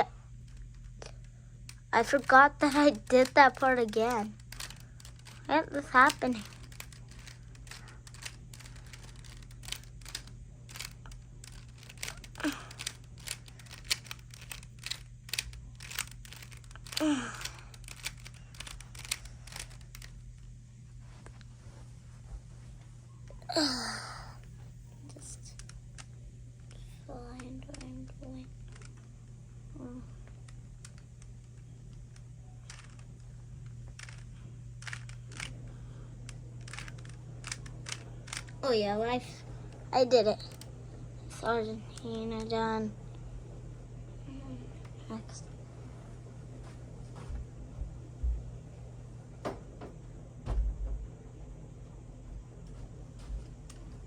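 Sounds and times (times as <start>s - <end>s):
low hum: 0.0s - 54.0s
plastic puzzle cube clicking: 0.6s - 20.2s, 27.4s - 29.0s, 30.4s - 33.3s, 33.9s - 35.5s, 36.6s - 38.6s.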